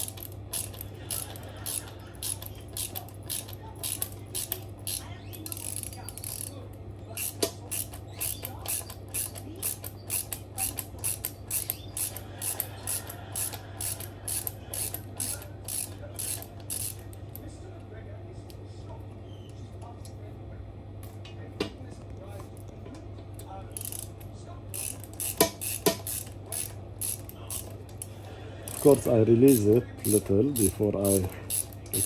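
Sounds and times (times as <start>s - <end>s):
ratchet wrench clicking: 0.0s - 17.1s, 23.8s - 28.1s, 28.7s - 32.0s
steady low hum: 0.0s - 32.0s.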